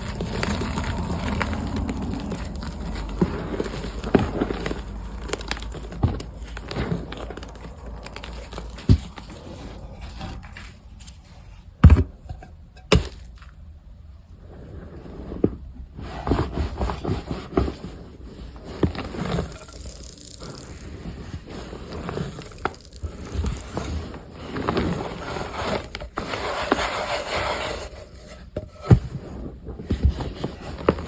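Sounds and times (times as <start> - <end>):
wet chalk crunching: 0.0 - 11.4, 18.2 - 28.3.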